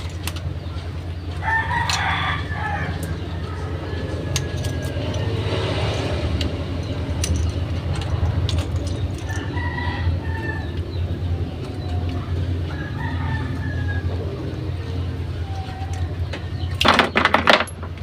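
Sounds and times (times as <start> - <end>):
steady low hum: 0.0 - 18.0
rooster crowing: 1.4 - 5.8, 9.2 - 11.2, 12.1 - 14.6.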